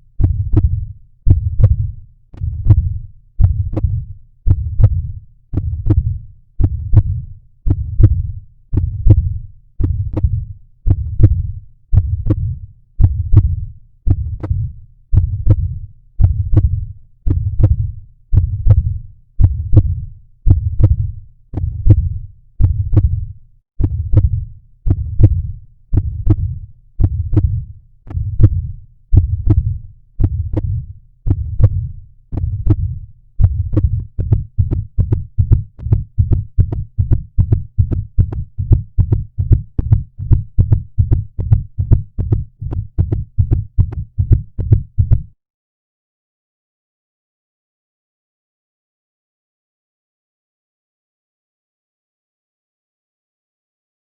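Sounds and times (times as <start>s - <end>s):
heartbeat throbbing: 0.2s - 45.4s.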